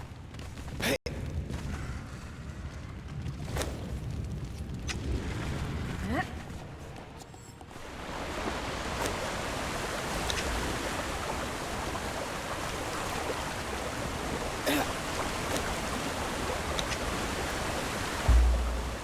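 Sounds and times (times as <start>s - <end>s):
waterfall rushing: 11.2s - 19.0s
short knock: 18.3s - 19.0s.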